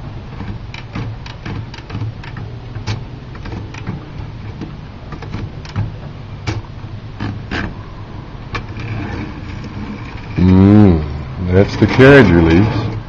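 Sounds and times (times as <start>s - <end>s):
manual typewriter clicking: 0.0s - 7.7s
steady low hum: 0.0s - 13.0s.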